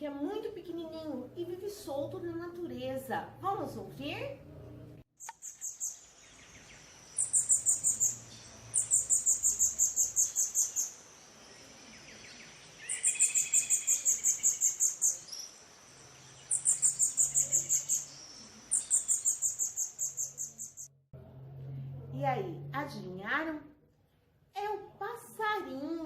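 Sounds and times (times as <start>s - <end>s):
songbird singing high chirps: 5.2s - 20.9s.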